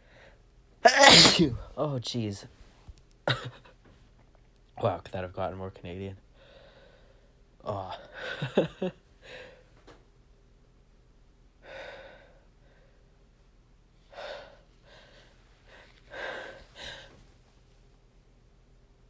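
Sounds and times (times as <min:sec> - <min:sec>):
person gasping breaths: 0:06.4 - 0:07.4, 0:09.2 - 0:09.7, 0:11.6 - 0:13.0, 0:14.1 - 0:17.2.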